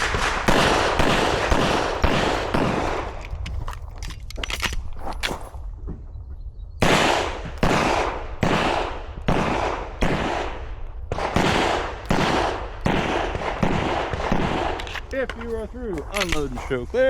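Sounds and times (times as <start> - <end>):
pistol shots with short echo: 0.0 - 3.4, 6.8 - 15.4.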